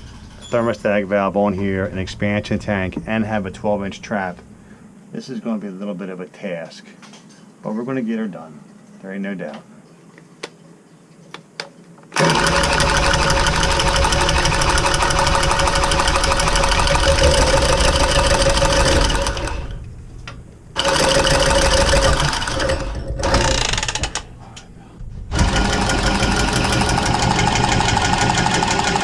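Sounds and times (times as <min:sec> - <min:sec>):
electric power tool motor whining: 0:12.2 - 0:19.8, 0:20.8 - 0:24.2, 0:25.3 - 0:29.0.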